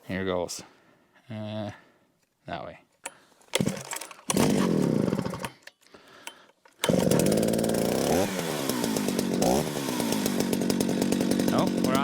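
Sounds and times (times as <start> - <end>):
chainsaw starting and running: 3.6 - 5.6, 6.7 - 12.0.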